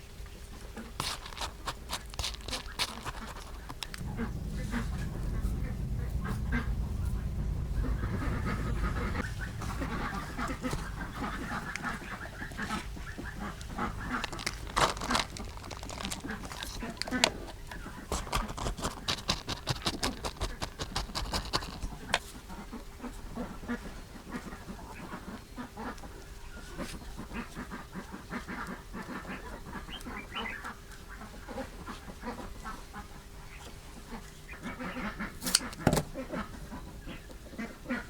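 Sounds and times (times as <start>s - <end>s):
farmyard birds calling: 4.1s - 17.0s, 23.1s - 38.0s.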